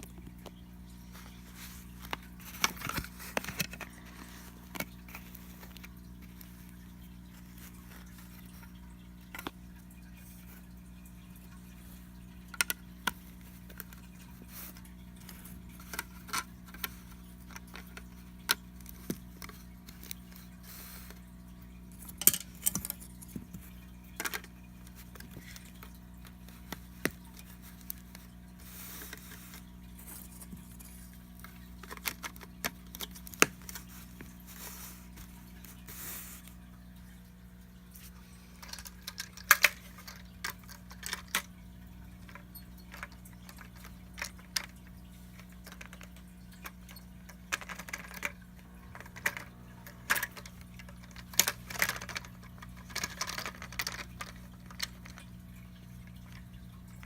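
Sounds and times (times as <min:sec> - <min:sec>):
plastic bricks clicking: 0:45.4 - 0:55.2.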